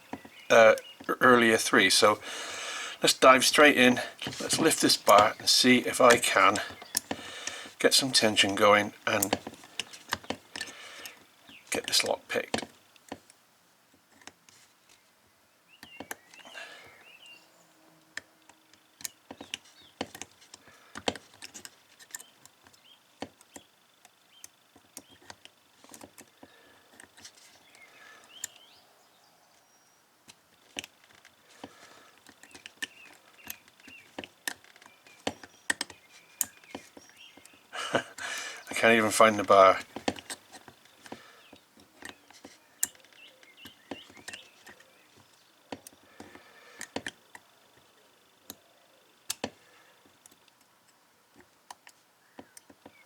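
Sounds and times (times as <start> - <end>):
combination padlock dials clicking: 2.9 - 13.4, 18.0 - 28.8, 30.3 - 47.5, 49.2 - 52.9
padlock shackle pulled: 4.2 - 11.2.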